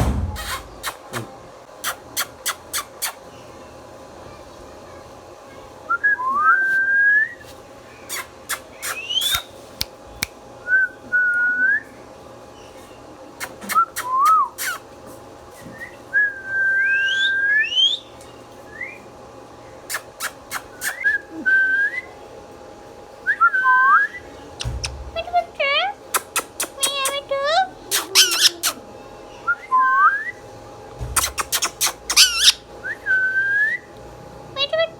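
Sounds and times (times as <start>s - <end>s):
parakeet squeaks: 0.3s - 1.2s, 1.8s - 3.2s, 8.1s - 9.5s, 13.4s - 14.8s, 24.6s - 25.0s, 26.2s - 27.2s, 27.9s - 28.8s, 31.2s - 32.6s
parakeet whistling: 8.1s - 9.5s, 16.7s - 18.1s, 27.9s - 28.8s, 31.2s - 33.9s
parakeet clicks: 8.1s - 10.4s, 24.6s - 25.0s, 26.1s - 27.2s, 31.2s - 32.5s.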